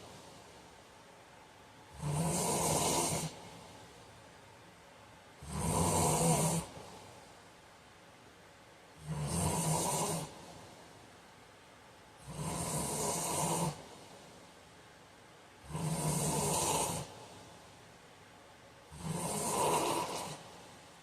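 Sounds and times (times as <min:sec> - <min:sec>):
quiet breathing: 0:00.0 - 0:07.6, 0:08.9 - 0:11.3, 0:12.1 - 0:21.0
man snoring: 0:01.9 - 0:03.4, 0:05.4 - 0:06.8, 0:09.0 - 0:10.4, 0:12.2 - 0:13.8, 0:15.6 - 0:17.1, 0:18.9 - 0:20.4.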